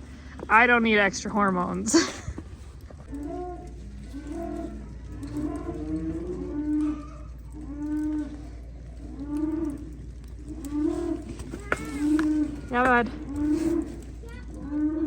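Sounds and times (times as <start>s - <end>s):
cattle mooing: 3.1s - 15.0s.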